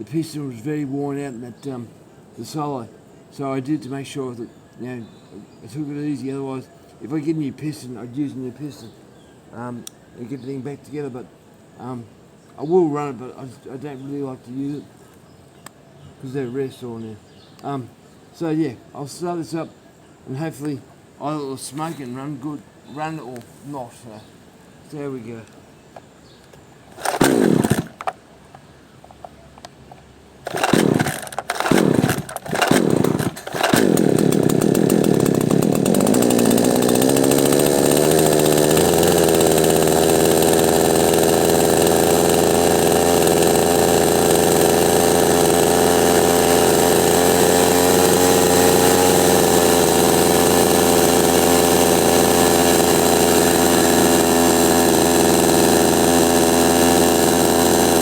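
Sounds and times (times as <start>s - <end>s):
chainsaw engine running: 26.9s - 28.2s, 30.4s - 58.0s
starter cord pulls: 26.9s - 28.2s, 30.4s - 58.0s.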